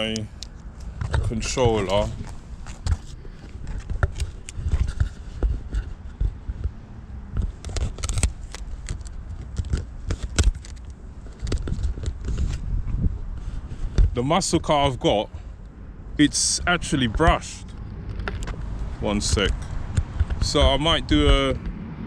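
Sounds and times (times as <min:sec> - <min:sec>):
plastic scraping: 0:00.8 - 0:14.1
plastic clicks: 0:07.4 - 0:12.4.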